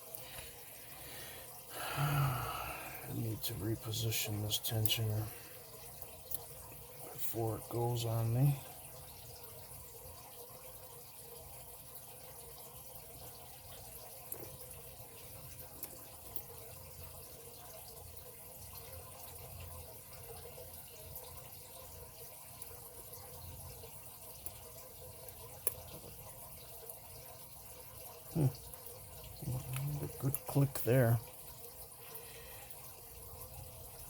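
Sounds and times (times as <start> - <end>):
background hiss: 0.2 - 5.6.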